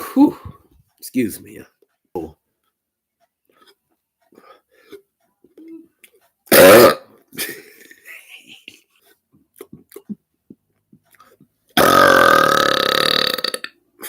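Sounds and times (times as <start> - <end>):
faint mouth and breath sounds: 3.4 - 6.3, 8.9 - 11.8
man burping loudly: 6.5 - 7.2, 11.8 - 13.8.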